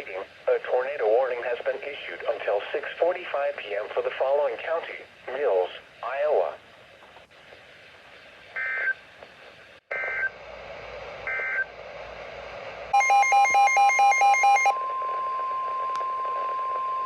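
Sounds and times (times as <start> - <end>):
steady warning alarm tone: 13.0 - 17.0.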